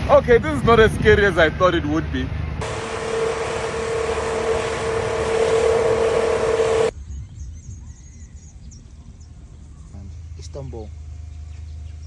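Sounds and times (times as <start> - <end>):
boat engine droning: 2.3 - 6.9
rushing noise: 2.6 - 6.9.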